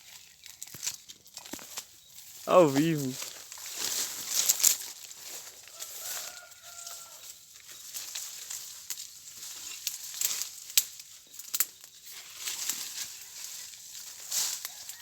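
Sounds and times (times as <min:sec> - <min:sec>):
rooster crowing: 0:05.7 - 0:07.2.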